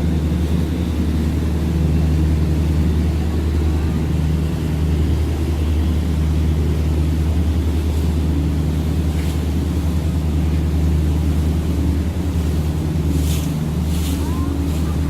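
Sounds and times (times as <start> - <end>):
boat engine droning: 0.0 - 15.0.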